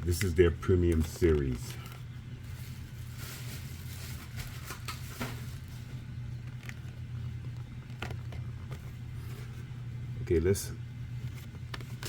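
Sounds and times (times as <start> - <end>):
steady low hum: 0.0 - 12.0
packaging clicks and rustles: 0.9 - 5.8.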